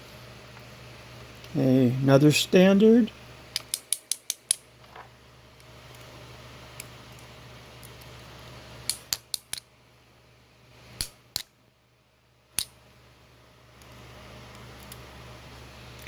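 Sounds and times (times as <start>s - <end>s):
small metal clicks and taps: 3.6s - 4.6s, 8.9s - 9.7s.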